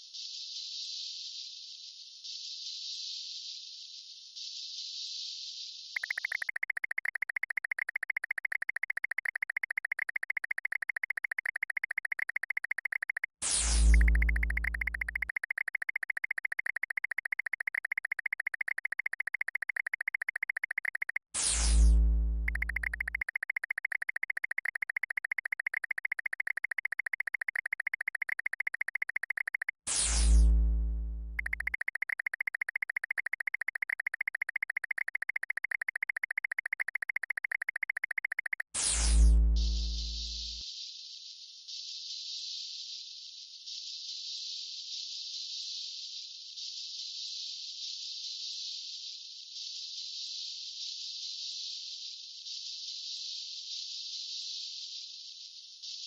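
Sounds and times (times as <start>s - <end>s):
rapidly pulsing electronic buzz: 6.0s - 40.6s.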